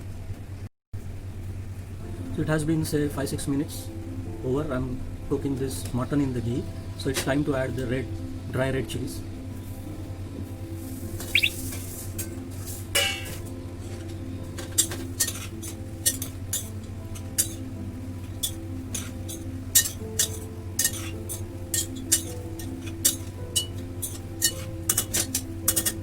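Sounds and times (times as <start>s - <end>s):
soft background music: 1.3s - 26.0s
metal spoon clinking on pot: 13.0s - 13.4s, 14.8s - 17.7s, 18.4s - 26.0s
meat frying: 14.4s - 26.0s.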